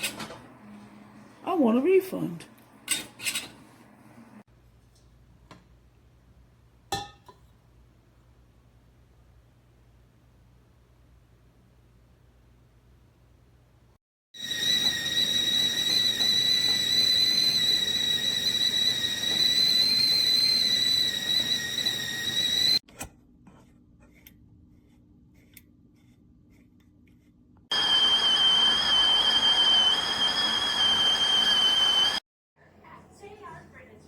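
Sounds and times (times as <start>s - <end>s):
stovetop kettle whistling: 14.4s - 22.8s, 27.7s - 32.2s.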